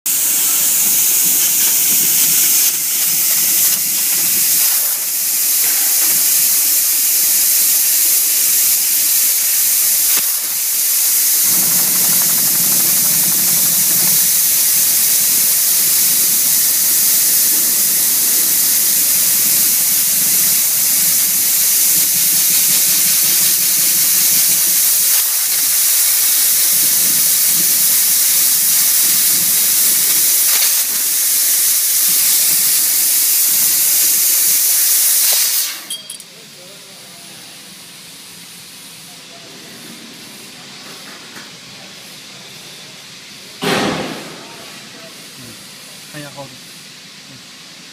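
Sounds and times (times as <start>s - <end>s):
hiss of gas jet: 0.1s - 35.9s.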